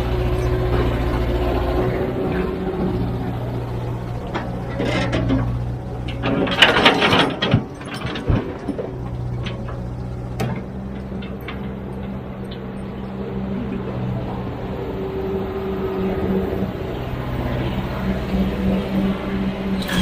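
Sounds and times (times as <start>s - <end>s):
diesel engine running: 0.0s - 20.0s
clattering and knocking: 4.3s - 12.7s
sharp clicks and knocks: 4.3s - 12.9s.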